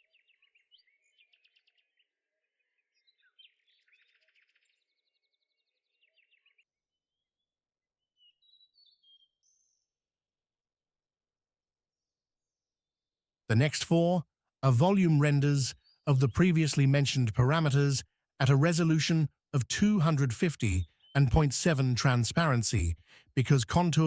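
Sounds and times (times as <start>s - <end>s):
bird chirps and trills: 8.2s - 9.9s.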